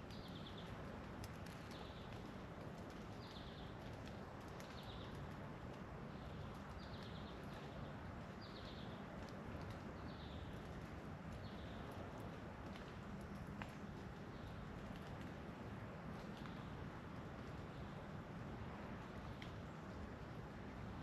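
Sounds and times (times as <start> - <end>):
outdoor background hiss: 0.0 - 21.0.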